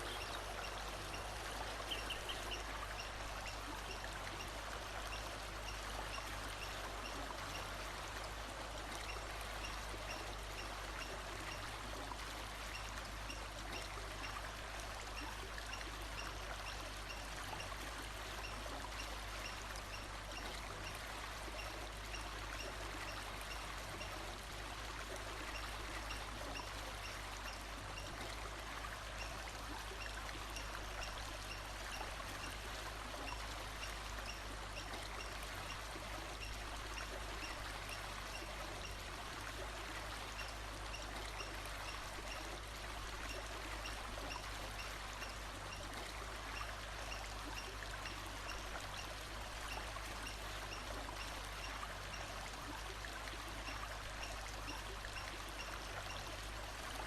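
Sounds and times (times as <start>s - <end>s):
bird chirp: 0.0s - 4.5s
stream water running: 0.0s - 57.0s.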